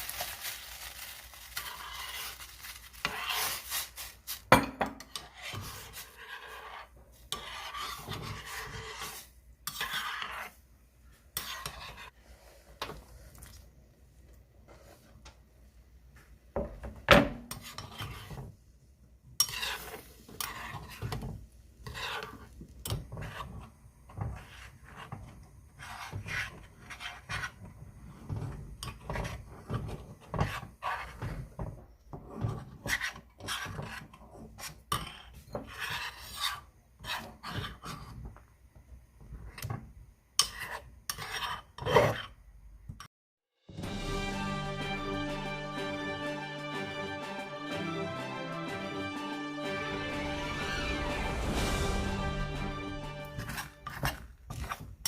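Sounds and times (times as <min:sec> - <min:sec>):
kitchen utensil scraping: 0:01.6 - 0:13.6, 0:17.3 - 0:18.6, 0:19.4 - 0:38.2, 0:40.4 - 0:42.4, 0:52.0 - 0:55.0.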